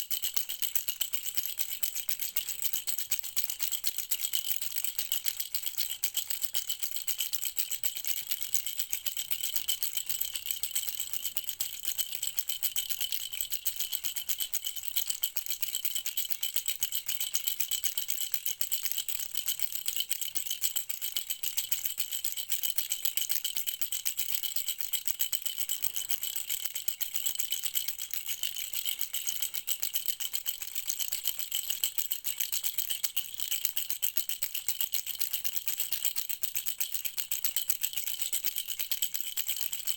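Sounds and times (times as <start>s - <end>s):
hand rattle shaken fast: 0.0s - 39.9s.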